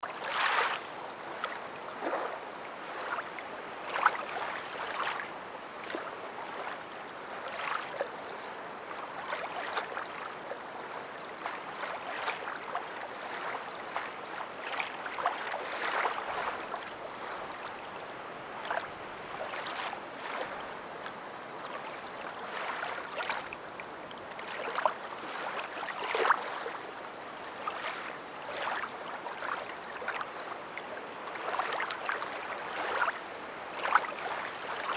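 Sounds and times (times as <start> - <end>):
water sloshing and splashing: 11.4 - 18.0, 18.6 - 26.8, 27.6 - 30.5, 31.3 - 34.9.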